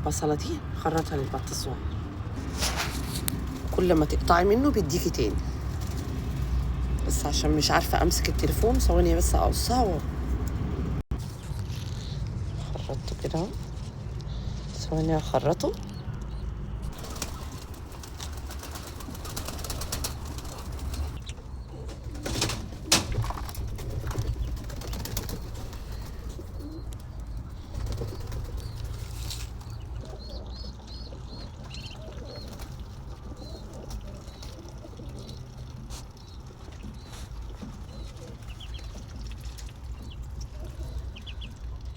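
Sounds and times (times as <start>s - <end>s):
pigeons cooing: 17.0s - 39.0s.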